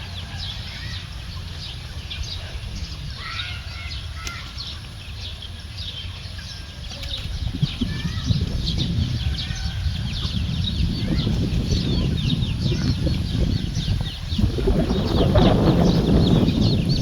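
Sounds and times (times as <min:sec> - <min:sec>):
low rumbling noise: 0:05.0 - 0:17.0.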